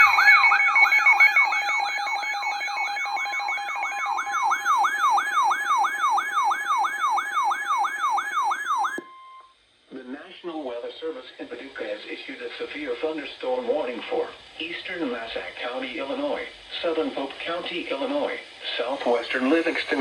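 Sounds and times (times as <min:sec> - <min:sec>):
yelping siren alert tone: 0:00.0 - 0:09.4
steady tones: 0:19.0 - 0:20.0.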